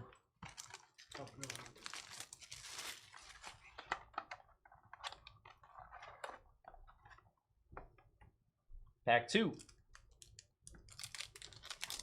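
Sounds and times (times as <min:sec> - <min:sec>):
foil wrappers rustling: 0:00.5 - 0:03.6, 0:10.9 - 0:12.0.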